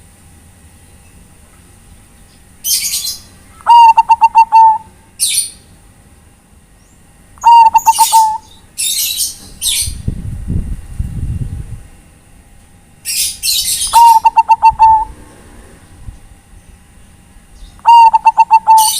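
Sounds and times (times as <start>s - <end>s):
small birds chirping: 2.1s - 5.7s, 6.8s - 10.1s, 13.0s - 15.1s, 16.5s - 18.9s
dove cooing: 2.9s - 4.9s, 7.4s - 8.4s, 13.8s - 15.2s, 17.8s - 18.9s.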